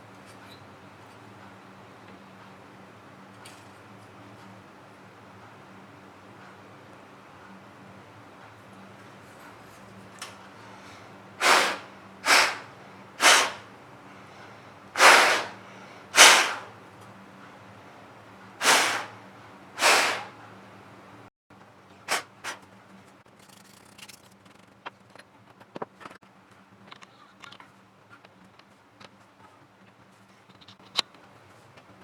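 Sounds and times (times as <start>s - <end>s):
compressed air hissing blasts: 11.4s - 13.7s, 15.0s - 16.8s, 18.6s - 20.4s, 22.1s - 22.6s.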